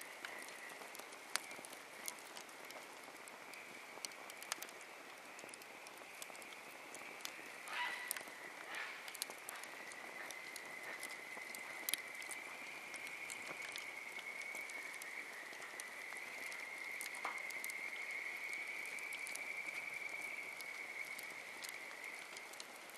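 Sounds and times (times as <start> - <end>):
campfire crackling and popping: 0.0 - 22.9.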